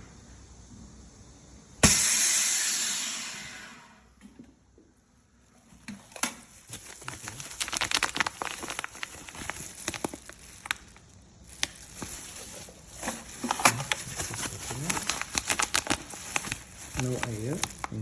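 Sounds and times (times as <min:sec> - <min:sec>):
crinkling plastic: 0:05.4 - 0:18.0.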